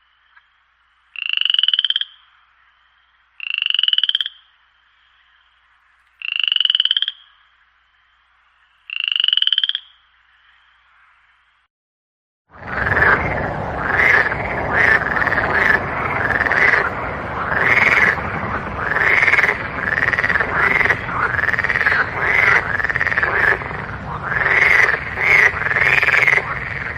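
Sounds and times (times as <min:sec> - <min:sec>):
frogs croaking in chorus: 0:00.0 - 0:11.7, 0:12.6 - 0:26.9
low rumbling background: 0:12.6 - 0:26.9.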